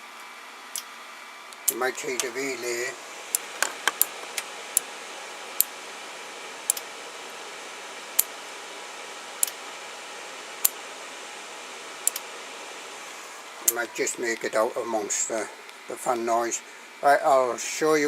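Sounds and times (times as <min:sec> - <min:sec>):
fan hiss: 0:00.0 - 0:18.0
relay clicking: 0:06.7 - 0:06.9, 0:09.4 - 0:09.6, 0:10.6 - 0:10.8, 0:12.0 - 0:12.3
toggle switch clicks: 0:06.7 - 0:06.9, 0:12.1 - 0:12.3.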